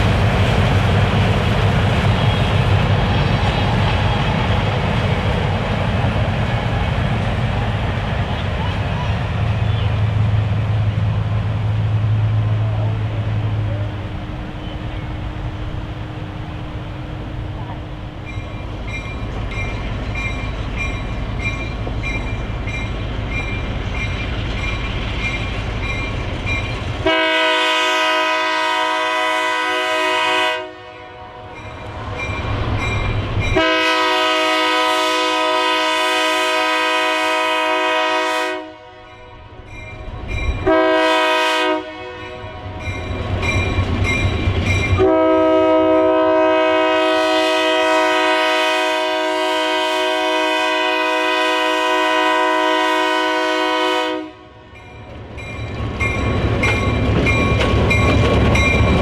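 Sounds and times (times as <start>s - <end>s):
locomotive engine rumbling: 0.0s - 38.1s, 54.6s - 59.0s
train air horn blasts: 27.0s - 31.6s, 33.6s - 39.4s, 40.6s - 42.8s, 45.0s - 54.7s.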